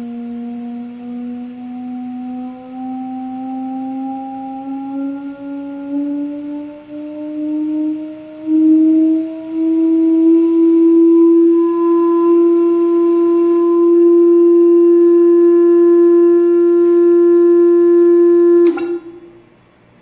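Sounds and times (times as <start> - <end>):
loud humming tone: 0.0 - 20.0
click: 18.6 - 19.3.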